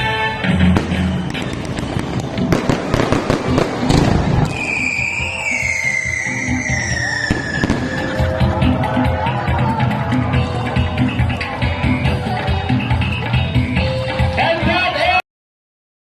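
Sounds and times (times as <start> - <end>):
background music: 0.0 - 15.2
fireworks crackling and popping: 0.7 - 8.5
falling whistle: 4.4 - 8.4.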